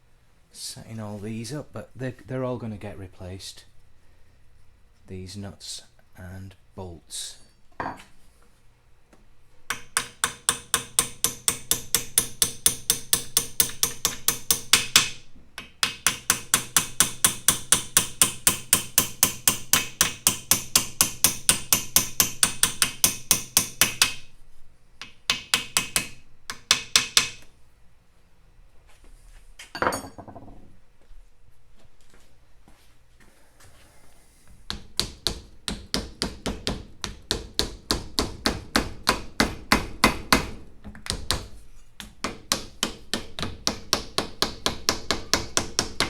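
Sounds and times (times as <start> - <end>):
hammer striking metal: 9.7 - 24.2.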